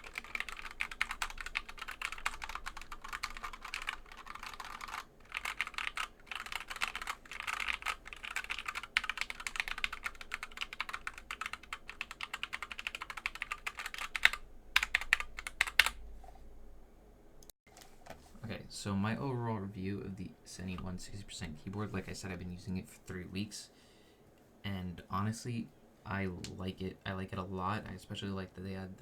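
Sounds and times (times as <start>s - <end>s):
mechanical keyboard typing: 0.0s - 16.0s.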